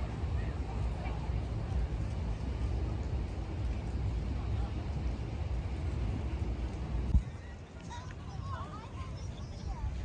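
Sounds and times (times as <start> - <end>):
low rumbling noise: 0.0 - 10.0.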